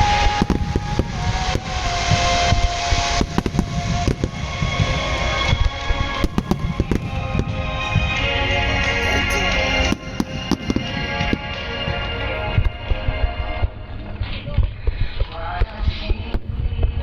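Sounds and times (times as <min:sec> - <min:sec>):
fireworks bursting: 0:00.0 - 0:12.8
music playing: 0:00.0 - 0:14.4
low rumble: 0:00.0 - 0:17.0.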